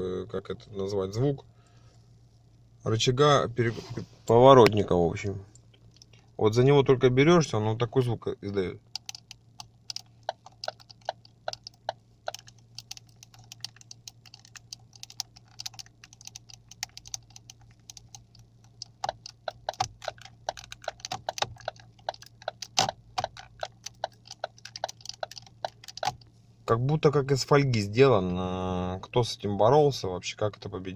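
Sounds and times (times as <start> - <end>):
plastic stalk creaking and crackling: 9.0 - 26.3.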